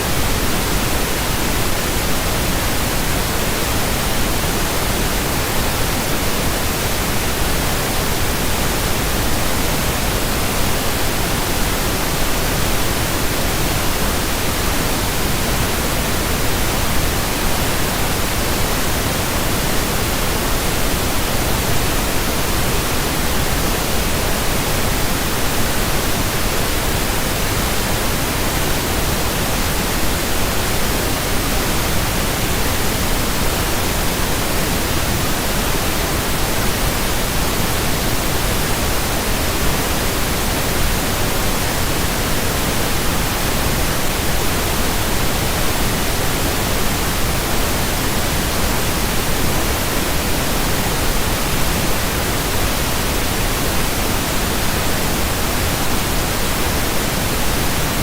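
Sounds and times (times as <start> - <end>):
steady pink noise hiss: 0.0 - 58.0.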